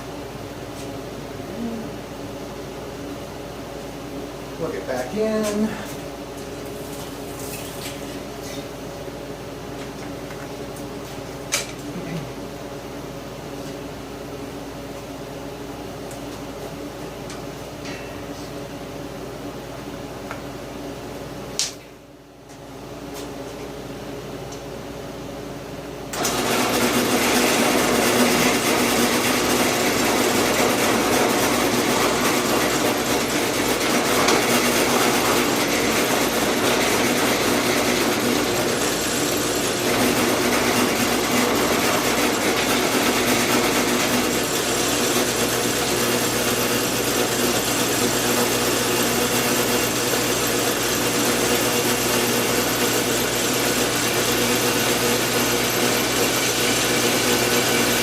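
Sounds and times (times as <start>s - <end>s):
drill press motor hum: 26.1s - 58.0s.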